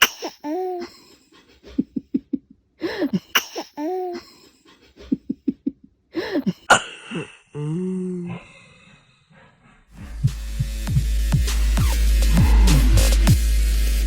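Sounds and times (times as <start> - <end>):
baby sneezing: 0.0 - 1.0, 3.0 - 4.4.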